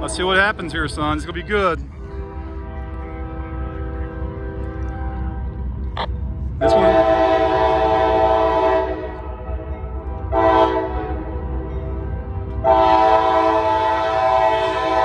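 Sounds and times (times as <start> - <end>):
moving train rumble: 0.0 - 15.0
locomotive air horn blasts: 6.6 - 9.3, 10.3 - 11.4, 12.6 - 15.0.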